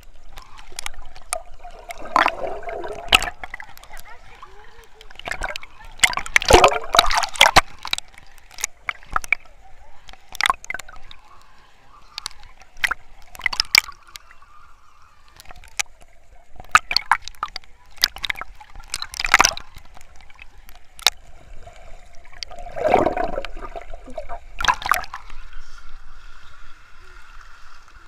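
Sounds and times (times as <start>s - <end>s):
sea waves splashing: 22.3s - 25.4s.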